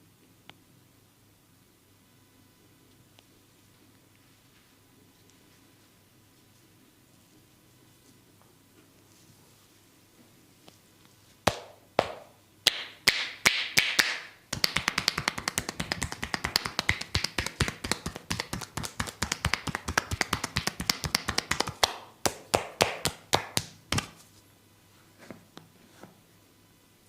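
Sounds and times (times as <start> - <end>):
hands slapping and tapping body: 11.5 - 24.3.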